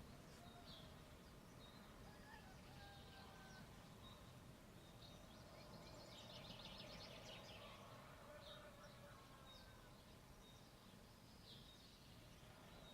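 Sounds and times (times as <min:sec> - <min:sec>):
faint birdsong: 0:00.0 - 0:12.9.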